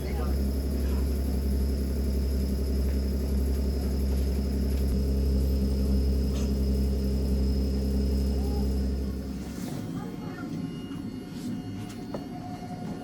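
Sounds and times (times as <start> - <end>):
train machinery electrical hum: 0.0 - 13.0.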